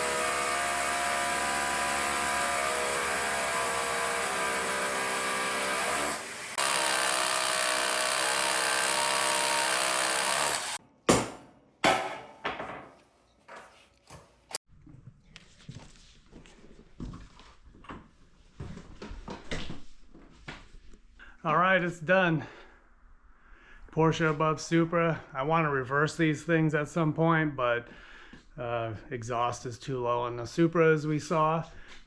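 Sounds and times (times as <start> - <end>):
power drill boring into concrete: 0.0 - 10.8
sharp knocks: 11.1 - 13.0.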